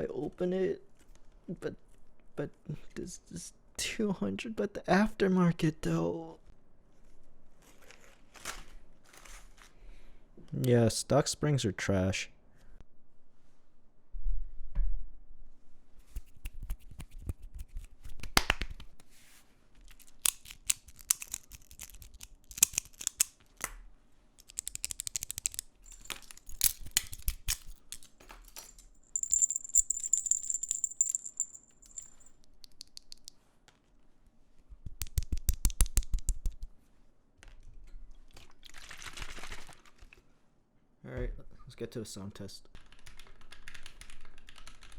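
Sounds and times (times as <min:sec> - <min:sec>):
plastic keyboard parts clicking: 0:19.9 - 0:23.4, 0:24.4 - 0:28.8.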